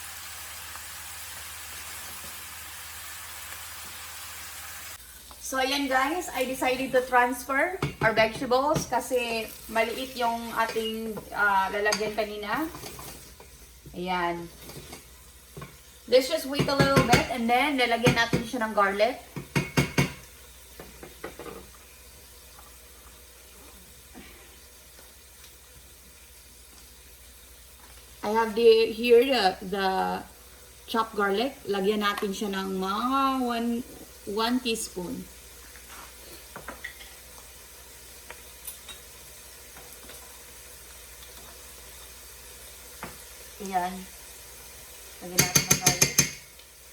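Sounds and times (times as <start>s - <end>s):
vegetables sizzling in a skillet: 0.0s - 46.9s
utensil clicking against pan: 45.4s - 46.5s.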